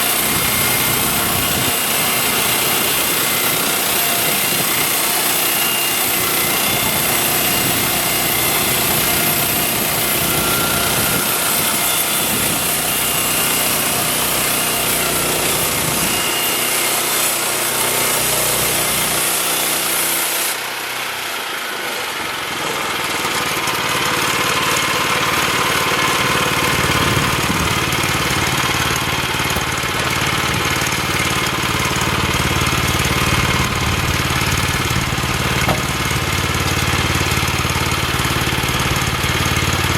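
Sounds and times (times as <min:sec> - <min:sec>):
sawmill gasoline engine running: 0:00.0 - 0:39.9.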